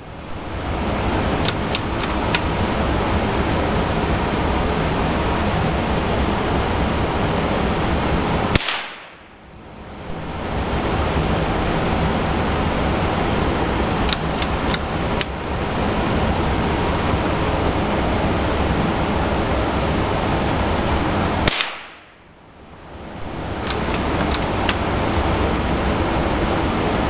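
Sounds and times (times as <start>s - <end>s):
steady rushing noise: 0.0s - 27.0s
gunshots: 8.6s - 9.4s, 21.5s - 22.2s.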